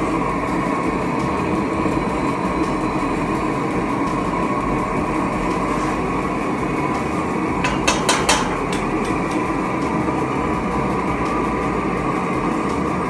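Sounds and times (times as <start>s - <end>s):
furnace roaring: 0.0s - 13.0s
sharp knocks: 7.6s - 9.6s.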